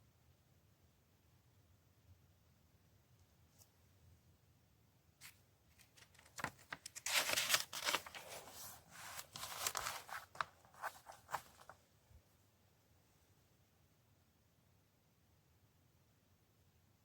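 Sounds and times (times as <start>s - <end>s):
crinkling tearing rustles: 5.8s - 11.7s.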